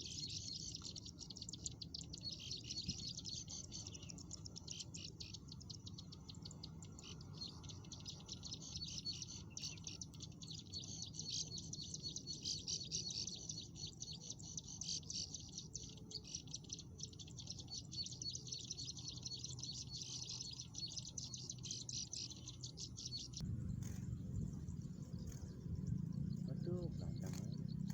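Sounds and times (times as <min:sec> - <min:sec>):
low rumble: 0:23.4 - 0:27.9
bird chattering calls: 0:26.2 - 0:27.9.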